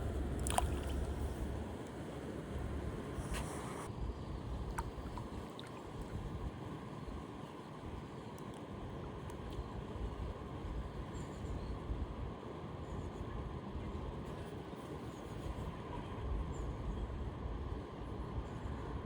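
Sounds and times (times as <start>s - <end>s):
river water rushing: 0.0s - 3.2s
wind buffeting microphone: 0.0s - 6.6s.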